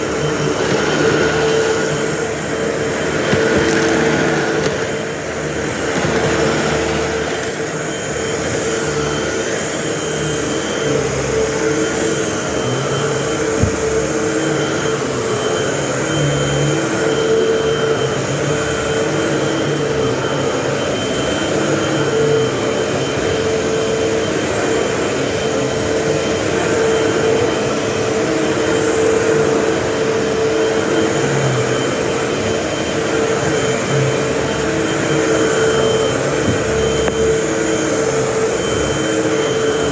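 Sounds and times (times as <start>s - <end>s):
vacuum cleaner running: 0.0s - 39.9s
brief knock: 13.6s - 13.9s.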